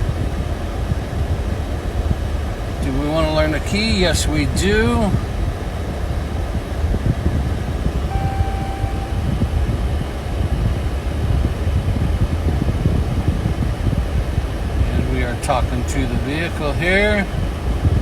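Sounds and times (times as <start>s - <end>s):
low background rumble: 4.5s - 11.1s
short electronic beep: 8.1s - 9.8s.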